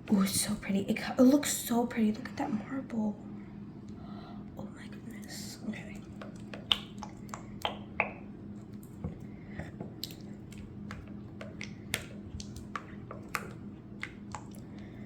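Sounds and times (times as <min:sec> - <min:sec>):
spatula stirring slime: 0:05.6 - 0:08.0, 0:08.6 - 0:15.0
wet squishes and clicks: 0:05.9 - 0:15.0.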